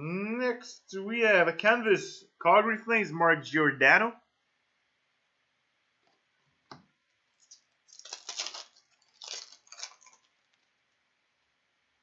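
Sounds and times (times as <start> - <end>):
trading cards and foil wrapper rustling: 7.4 - 10.7.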